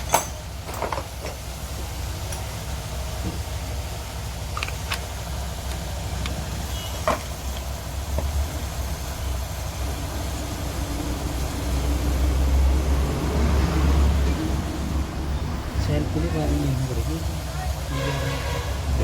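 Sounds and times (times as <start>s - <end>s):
metal parts knocking: 0.0s - 1.4s, 4.5s - 8.3s.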